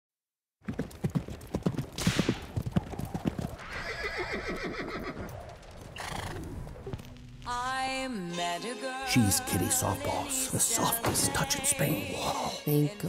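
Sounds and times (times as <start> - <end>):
horse hooves clip-clopping: 0.6 - 7.6
horse whinnying: 3.0 - 6.8.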